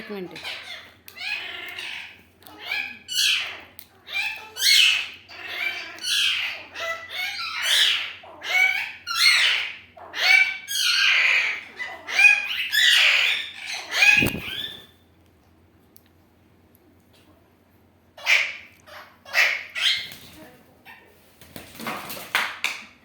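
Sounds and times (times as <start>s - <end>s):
parrot squawking: 0.0s - 14.9s, 18.2s - 20.2s.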